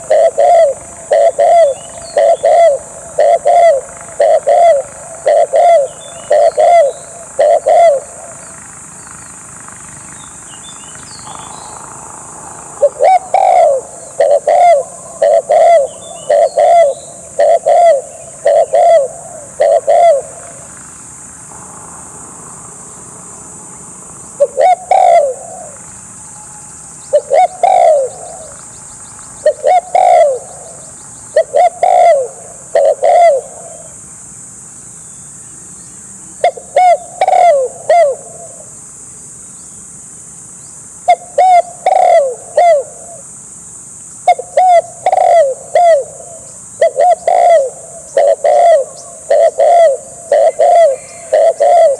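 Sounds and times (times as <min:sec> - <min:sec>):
dove cooing: 0:00.0 - 0:21.3, 0:24.3 - 0:34.0, 0:36.3 - 0:38.8, 0:41.0 - 0:43.3, 0:44.2 - 0:51.9
high-pitched hum: 0:00.0 - 0:38.8.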